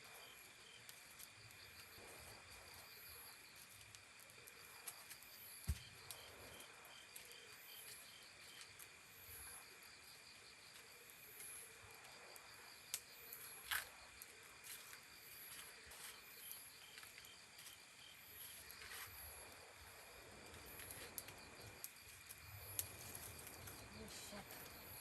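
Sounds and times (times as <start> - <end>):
insects chirring: 0.1 - 25.0.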